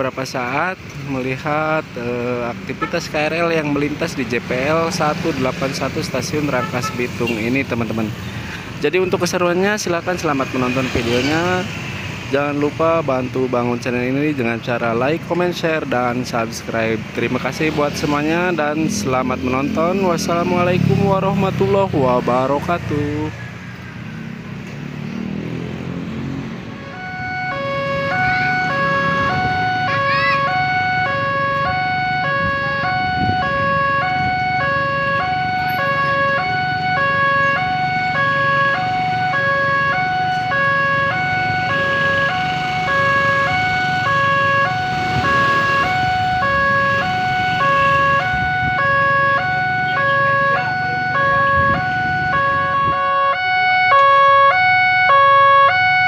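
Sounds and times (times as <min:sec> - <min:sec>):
level-crossing warning siren: 0:26.6 - 0:56.0.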